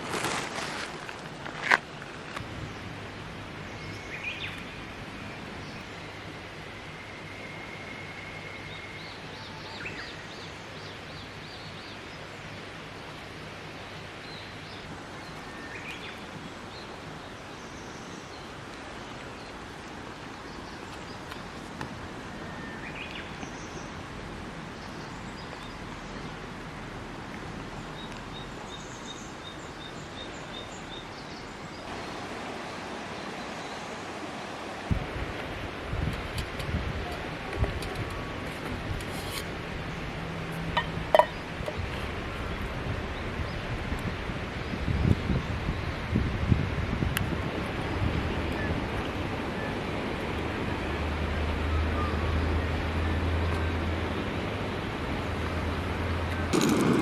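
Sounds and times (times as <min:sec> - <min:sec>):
river rushing: 0:00.0 - 0:57.0
birds chirping: 0:37.0 - 0:43.6.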